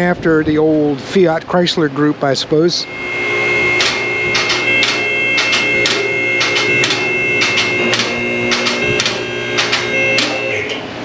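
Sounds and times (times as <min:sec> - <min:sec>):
background music with steady beat: 0:03.0 - 0:10.8.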